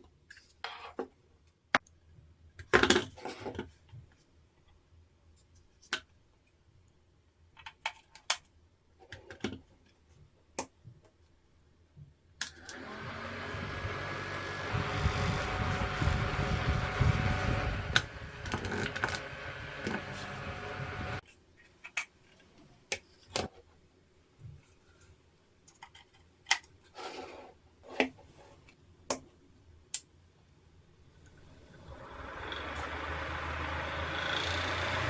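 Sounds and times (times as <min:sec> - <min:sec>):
small motor whirring: 0:12.6 - 0:21.2, 0:31.3 - 0:35.0.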